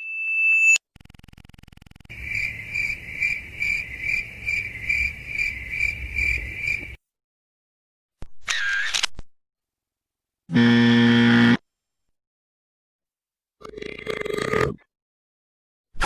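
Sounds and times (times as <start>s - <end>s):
cricket chirping: 2.1s - 7.0s.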